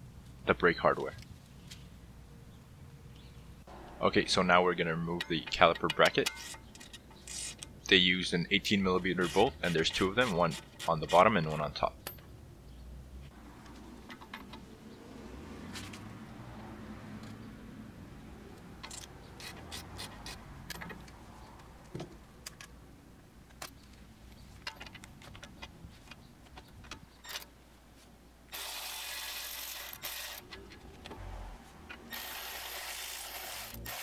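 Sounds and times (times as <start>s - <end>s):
hand tools clicking and clinking: 5.0s - 7.9s, 13.6s - 14.8s, 18.6s - 21.8s.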